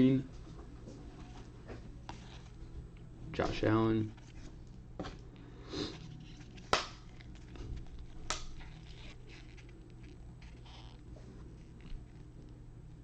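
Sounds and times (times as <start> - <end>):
cards rustling: 3.4 - 4.6, 5.9 - 12.5.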